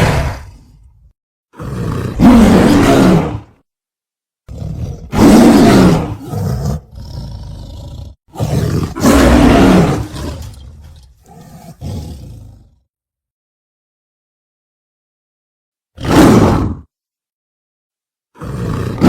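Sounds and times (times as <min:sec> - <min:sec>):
big cat roaring and growling: 0:00.0 - 0:00.9, 0:01.6 - 0:03.6, 0:04.5 - 0:12.9, 0:16.0 - 0:16.9, 0:18.4 - 0:19.0.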